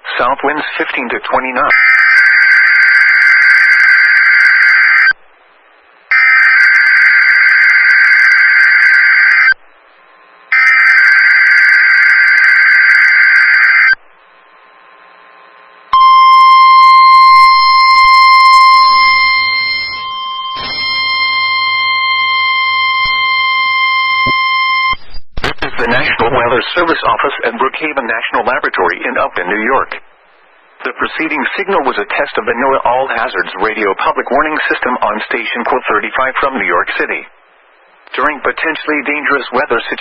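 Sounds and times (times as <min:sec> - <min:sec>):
shrill steady alarm tone: 0:01.7 - 0:05.2, 0:06.1 - 0:09.6, 0:10.5 - 0:14.0, 0:16.0 - 0:25.0.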